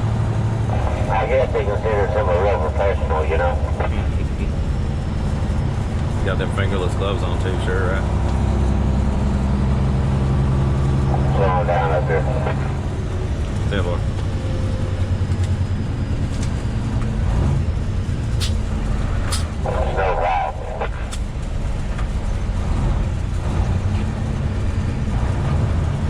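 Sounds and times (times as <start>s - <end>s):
diesel engine and road noise: 0.0s - 26.0s
sharp clicks: 18.4s - 18.7s, 19.3s - 19.6s.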